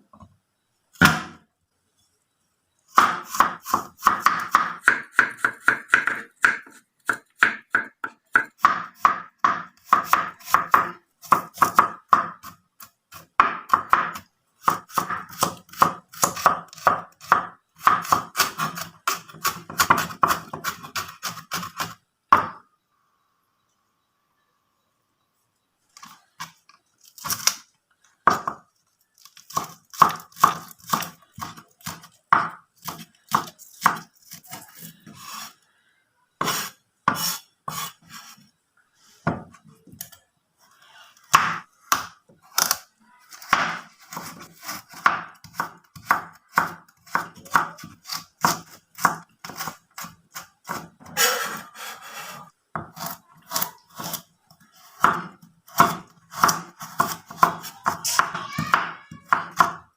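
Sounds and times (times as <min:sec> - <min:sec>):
knife chopping on cutting board: 0:36.4 - 0:38.0.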